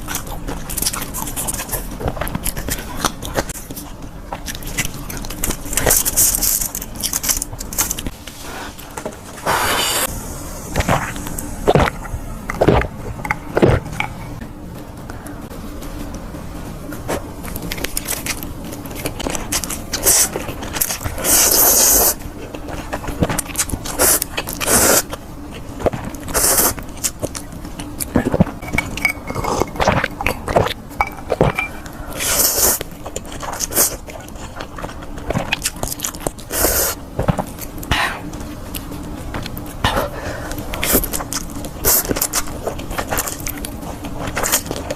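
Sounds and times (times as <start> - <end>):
crunching and chewing food: 0.0 - 10.1, 16.8 - 44.9
hissing bursts: 9.4 - 12.2.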